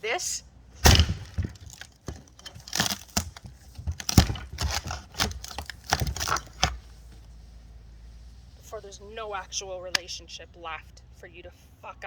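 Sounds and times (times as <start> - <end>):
crinkling tearing and cracking: 0.8 - 7.3.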